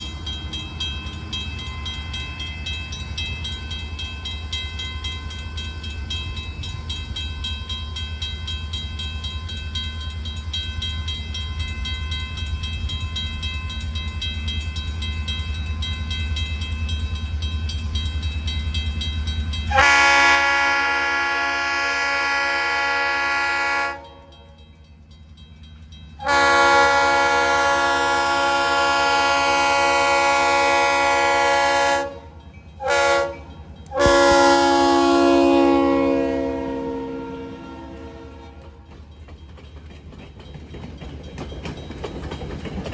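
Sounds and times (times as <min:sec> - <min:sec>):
train rumbling: 0:00.0 - 0:42.9
train horn blast: 0:19.7 - 0:24.5, 0:26.2 - 0:38.8.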